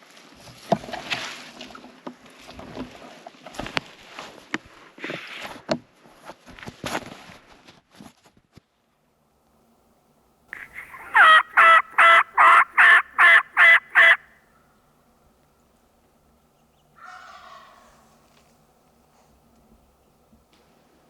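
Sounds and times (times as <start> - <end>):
turkey call hen yelps: 10.6 - 14.3, 17.0 - 18.2.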